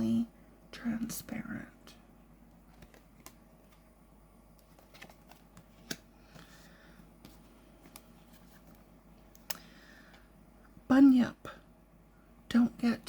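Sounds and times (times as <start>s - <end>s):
cards rustling: 2.6s - 3.9s, 4.6s - 9.7s
cards clicking and tapping: 2.7s - 3.8s, 4.6s - 6.6s.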